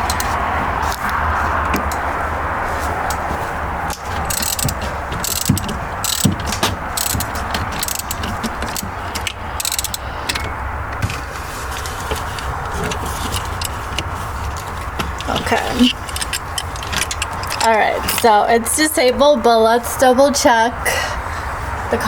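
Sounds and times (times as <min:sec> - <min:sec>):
ratchet wrench clicking: 0:03.9 - 0:10.5, 0:15.9 - 0:18.3.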